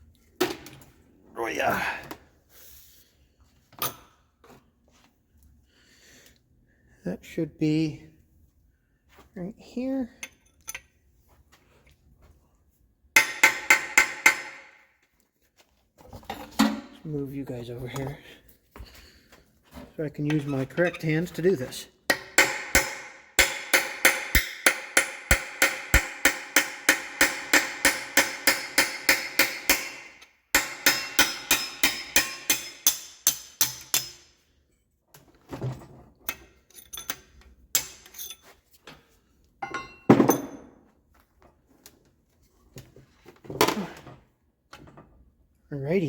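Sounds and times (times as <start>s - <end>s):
rapid hammer blows on metal: 22.1s - 33.8s
metal parts clanking: 36.3s - 38.5s.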